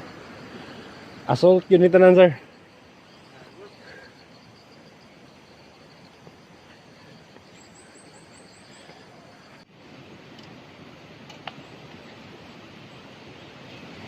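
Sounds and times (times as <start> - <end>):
outdoor background hiss: 0.0 - 14.0
small bird chirping: 2.5 - 9.6.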